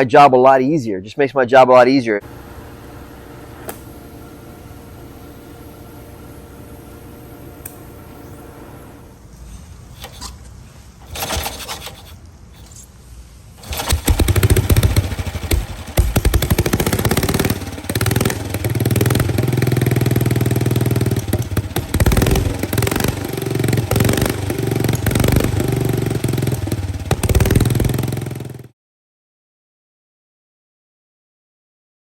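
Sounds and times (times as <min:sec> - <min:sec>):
motorcycle engine revving: 0:13.6 - 0:28.7.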